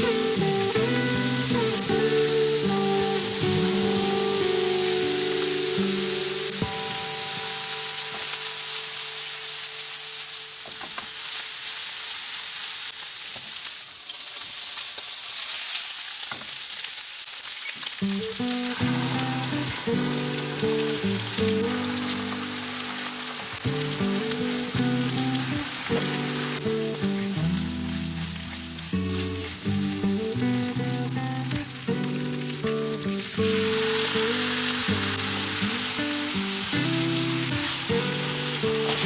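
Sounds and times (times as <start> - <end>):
background music: 0.0 - 9.1, 18.1 - 39.0
food sizzling in a frying pan: 0.0 - 39.0.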